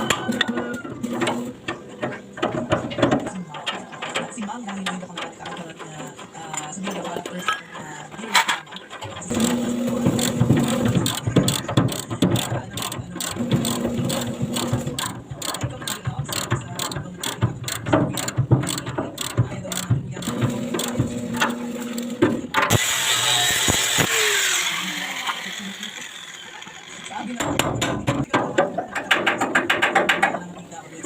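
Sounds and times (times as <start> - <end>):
metallic clicking and rattling: 0.0 - 22.8
power tool motor hum: 9.3 - 12.0, 20.2 - 27.4
tool spinning down whine: 22.8 - 27.4.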